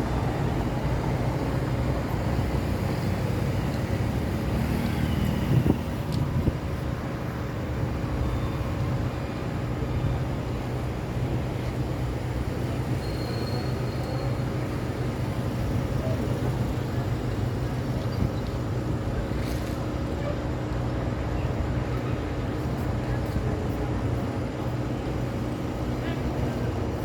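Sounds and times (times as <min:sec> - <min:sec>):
hiss of passing traffic: 0:00.0 - 0:27.0
vehicle engines droning: 0:00.0 - 0:27.0.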